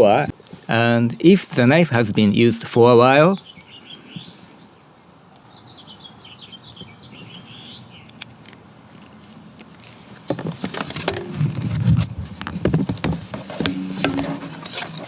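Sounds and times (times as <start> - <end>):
small bird chirping: 5.4 - 8.2
handling knocks and scraping: 9.7 - 15.0.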